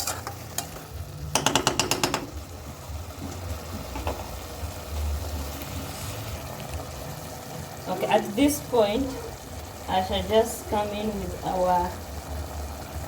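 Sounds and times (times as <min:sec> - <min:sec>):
spoon scraping pot: 0:00.0 - 0:00.8.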